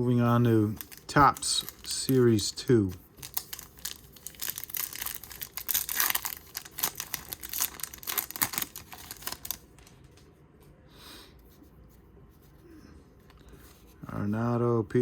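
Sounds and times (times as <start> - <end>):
foil wrapper crinkling and tearing: 0.6 - 2.4, 3.2 - 10.0.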